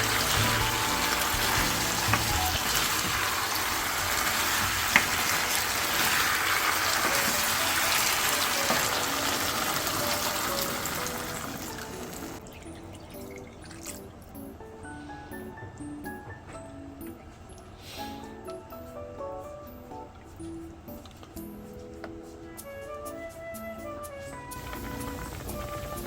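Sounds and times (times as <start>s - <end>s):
soft background music: 0.0s - 26.0s
watery hiss: 17.8s - 18.3s.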